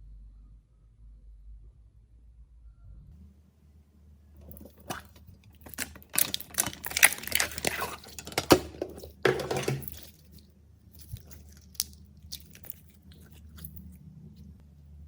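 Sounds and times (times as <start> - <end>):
slime squelching: 4.4 - 10.4, 11.0 - 13.9.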